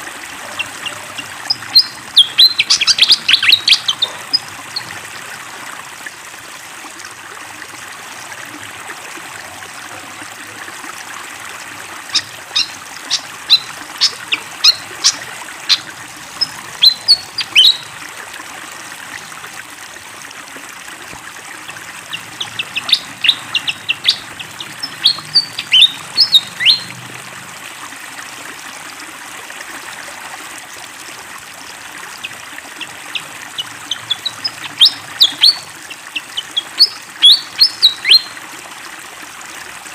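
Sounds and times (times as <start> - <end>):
flowing water rushing: 0.0 - 39.9
bird singing whistled notes: 0.6 - 4.2, 12.2 - 15.8, 16.4 - 17.9, 22.4 - 26.9, 33.6 - 35.6, 36.4 - 38.3.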